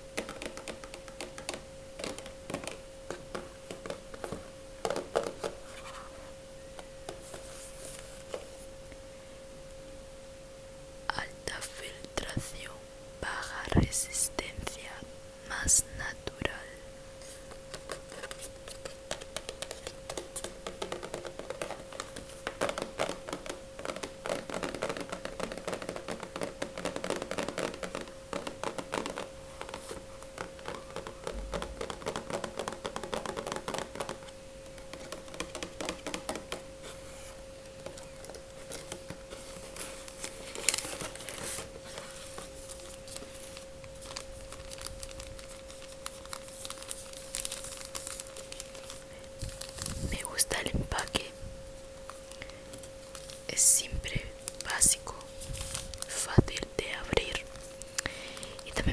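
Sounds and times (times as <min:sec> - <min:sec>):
steady hum: 0:00.0 - 0:58.9
plastic packet crinkling and tearing: 0:37.8 - 0:50.3, 0:54.4 - 0:58.9.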